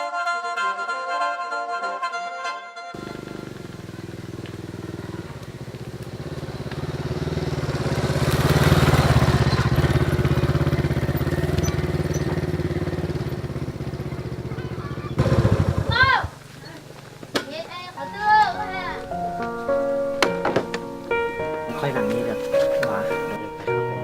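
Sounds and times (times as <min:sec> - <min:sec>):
small engine running: 0:03.0 - 0:17.3, 0:21.8 - 0:23.4.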